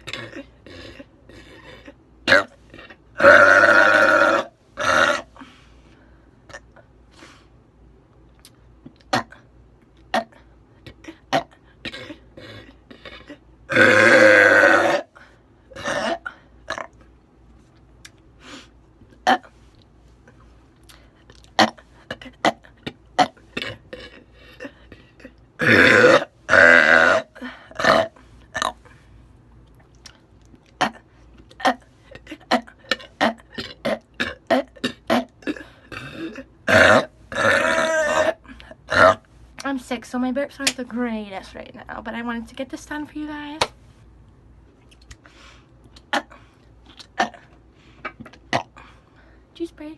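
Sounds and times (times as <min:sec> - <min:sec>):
woman belching: 0:00.0 - 0:01.1, 0:02.2 - 0:02.5, 0:03.1 - 0:05.3, 0:09.0 - 0:09.4, 0:11.2 - 0:15.1, 0:15.7 - 0:17.0, 0:19.2 - 0:19.5, 0:21.6 - 0:28.8, 0:30.8 - 0:39.2, 0:47.0 - 0:47.5
mouth clicks: 0:44.8 - 0:47.4.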